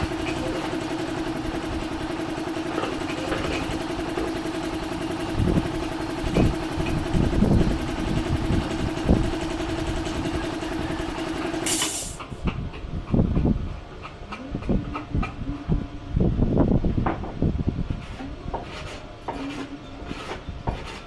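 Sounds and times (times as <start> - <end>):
motor humming: 0.0 - 12.2
brief hiss: 11.6 - 12.2.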